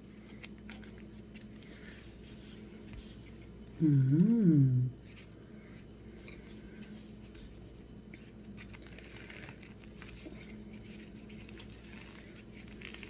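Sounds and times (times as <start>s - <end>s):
person humming: 3.7s - 5.0s.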